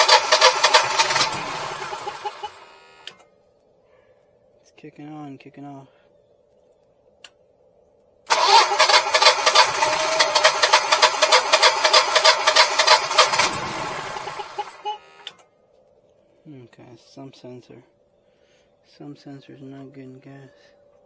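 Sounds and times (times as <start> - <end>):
generator engine running: 0.0 - 2.9, 8.3 - 15.3.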